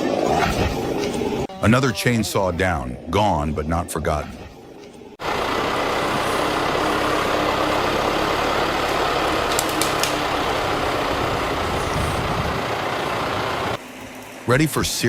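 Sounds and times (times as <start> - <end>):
engine running: 5.2 - 14.1
short clicks: 9.5 - 10.3.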